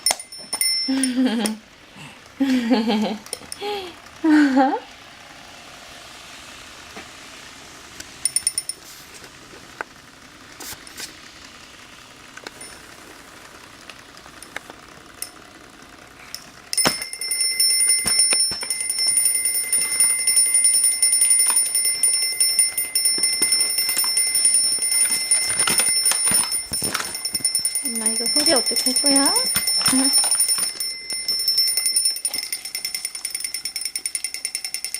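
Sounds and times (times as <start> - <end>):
alarm clock ringing: 0.0 - 1.6, 8.2 - 8.8, 16.4 - 34.9.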